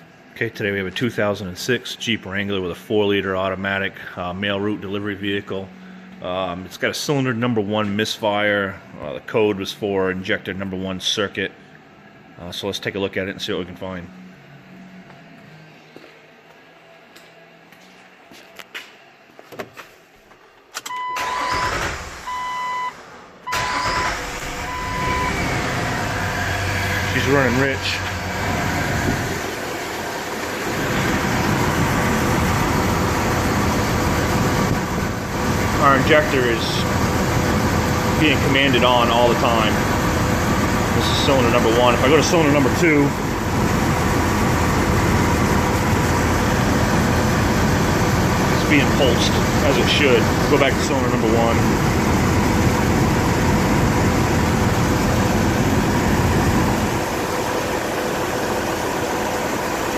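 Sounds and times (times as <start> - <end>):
misfiring car engine running: 23.5 - 59.9.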